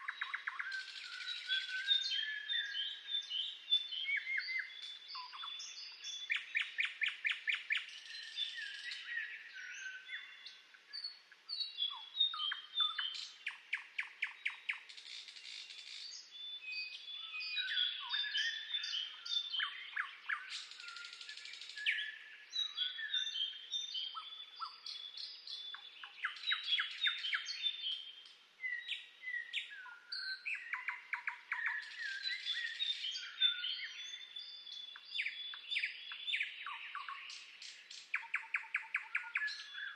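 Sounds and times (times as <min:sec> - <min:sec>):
songbirds singing: 0:00.0 - 0:39.9
bird trills: 0:24.0 - 0:39.9.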